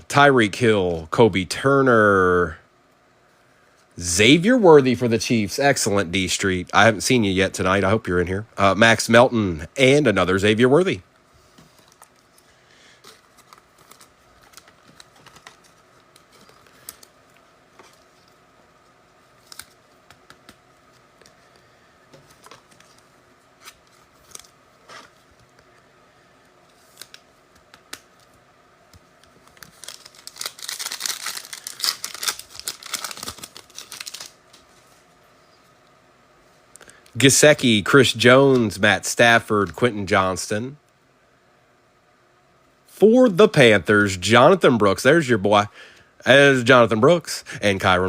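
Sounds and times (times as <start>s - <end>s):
wrapper crinkling and tearing: 13.0s - 17.1s, 29.4s - 34.6s
cards clicking and flicking: 19.4s - 23.0s.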